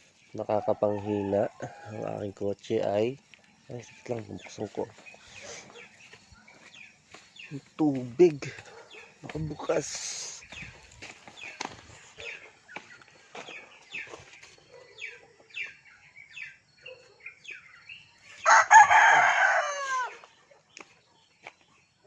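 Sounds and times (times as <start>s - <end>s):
rooster crowing: 0.5s - 2.3s, 18.4s - 20.3s.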